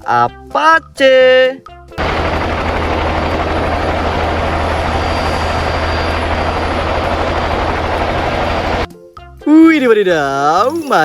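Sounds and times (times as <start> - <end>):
helicopter rotor chopping: 2.0 - 8.9.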